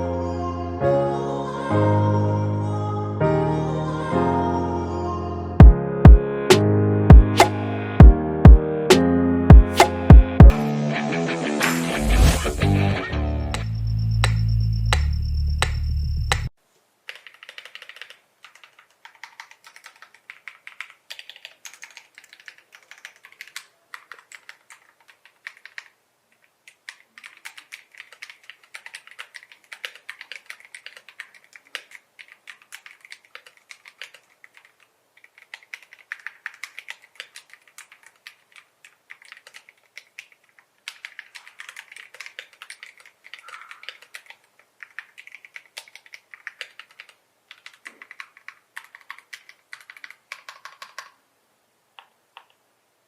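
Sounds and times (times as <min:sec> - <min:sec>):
music: 0:00.0 - 0:16.5.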